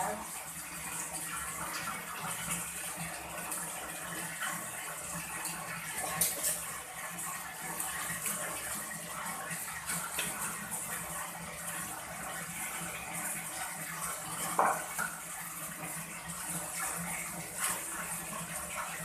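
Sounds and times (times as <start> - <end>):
water running and splashing: 0.0 - 19.0.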